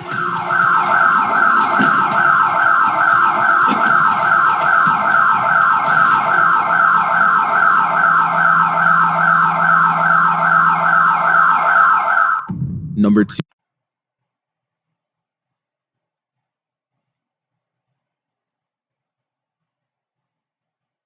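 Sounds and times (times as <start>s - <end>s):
burglar alarm siren wailing: 0.0s - 12.5s.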